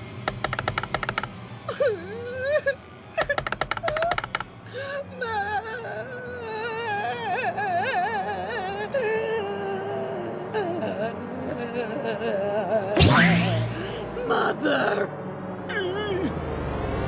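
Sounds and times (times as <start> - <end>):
rapid clattering clicks: 0.0 - 1.4, 3.2 - 4.6
gliding whimpers: 0.5 - 15.1
cartoon character wailing: 12.9 - 15.1.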